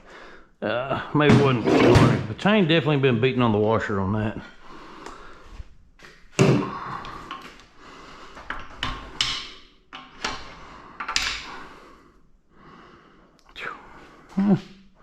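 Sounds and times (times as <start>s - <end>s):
metal parts knocking and scraping: 1.3s - 2.2s.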